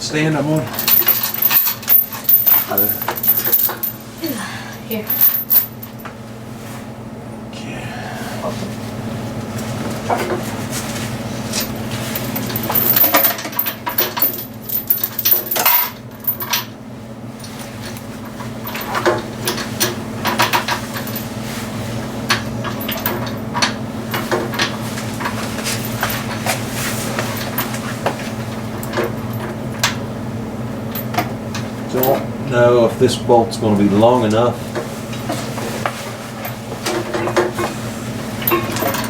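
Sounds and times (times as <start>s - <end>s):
tools clinking against metal: 0.5s - 5.9s, 11.5s - 16.7s, 38.4s - 39.0s.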